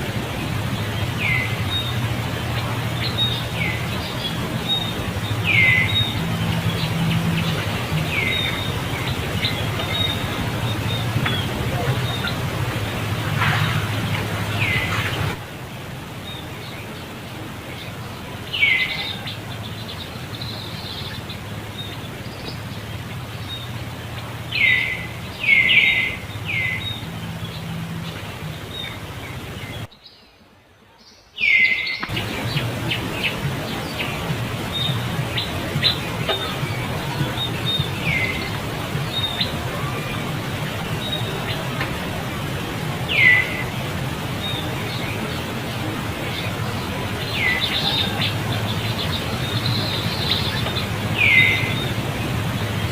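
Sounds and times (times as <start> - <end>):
steady low hum: 0.0 - 18.5, 32.1 - 52.9.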